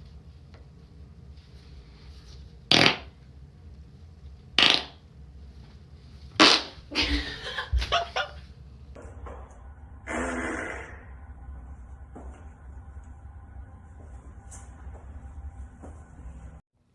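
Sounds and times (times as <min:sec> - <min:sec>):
farts: 0:02.7 - 0:03.1, 0:04.6 - 0:05.0, 0:06.4 - 0:06.8, 0:10.1 - 0:11.1.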